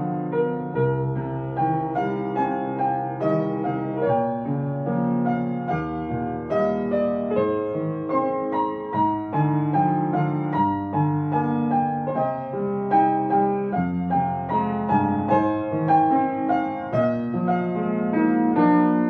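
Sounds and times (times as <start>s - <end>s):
piano music: 0.0s - 19.0s.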